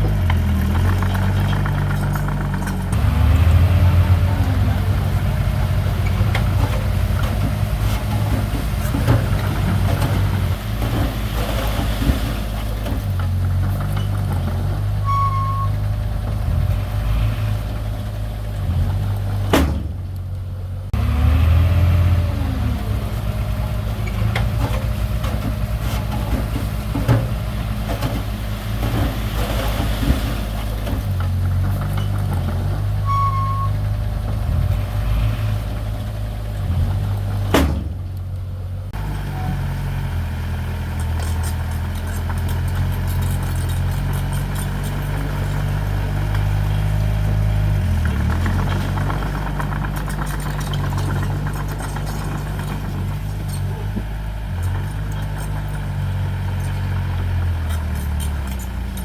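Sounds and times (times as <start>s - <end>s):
heavy machinery engine droning: 0.0s - 59.0s.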